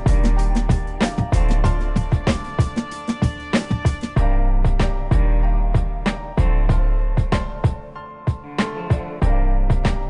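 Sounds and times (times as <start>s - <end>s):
background music with deep bass: 0.0s - 10.0s.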